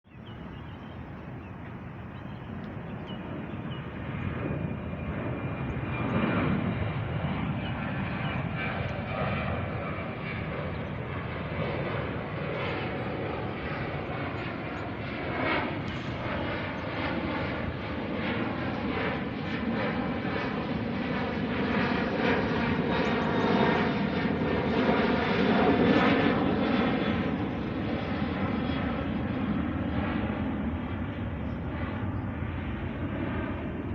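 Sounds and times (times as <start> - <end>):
airplane engines rumbling and whining: 0.1 - 33.9.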